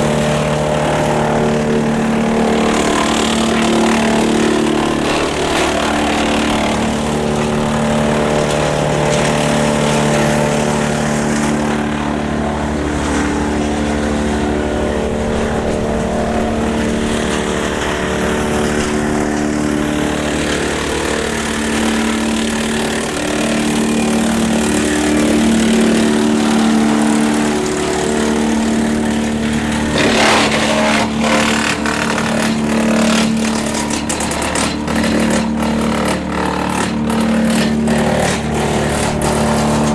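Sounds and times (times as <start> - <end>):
tractor engine running: 0.0 - 39.9
wood chipper cracking branches: 0.0 - 39.9.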